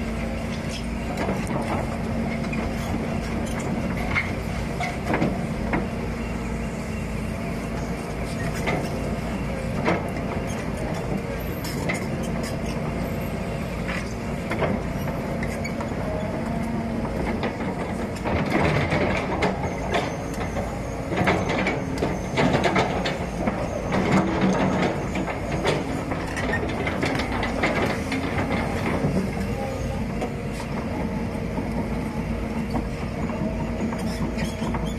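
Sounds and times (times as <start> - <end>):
diesel engine hum: 0.0 - 34.9
machine clanks and knocks: 17.0 - 29.6.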